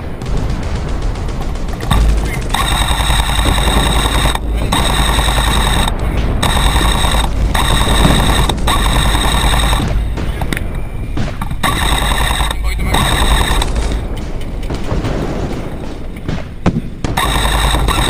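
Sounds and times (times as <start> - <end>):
airsoft gun firing full-auto: 0.2 - 10.1, 11.5 - 14.0, 17.0 - 18.0.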